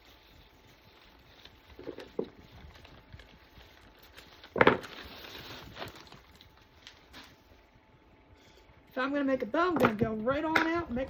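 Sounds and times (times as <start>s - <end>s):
rustling: 0.0s - 7.7s.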